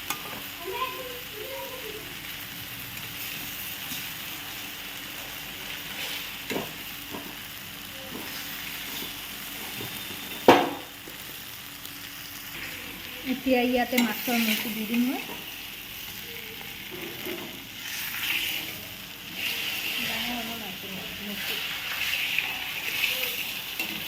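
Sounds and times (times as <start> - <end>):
cabbage sizzling in oil: 0.0 - 24.0
utensil scraping a pan: 16.9 - 20.5, 21.2 - 24.0.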